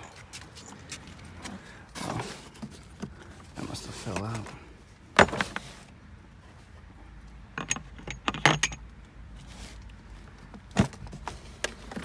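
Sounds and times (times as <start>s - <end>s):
metal tools clinking and rattling: 0.0s - 0.8s, 7.5s - 8.9s.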